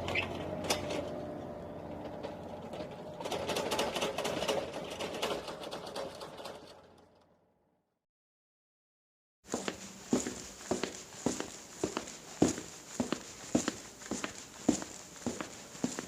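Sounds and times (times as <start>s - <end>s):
rapid mechanical clattering: 2.7s - 6.9s.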